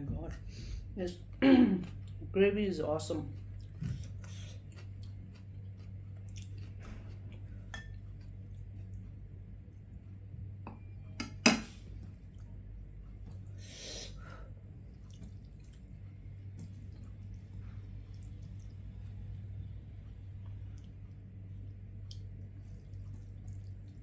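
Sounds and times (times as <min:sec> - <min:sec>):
steady low hum: 0:00.0 - 0:24.0
chewing food: 0:01.2 - 0:02.3, 0:03.0 - 0:10.0, 0:12.0 - 0:13.6, 0:14.6 - 0:24.0.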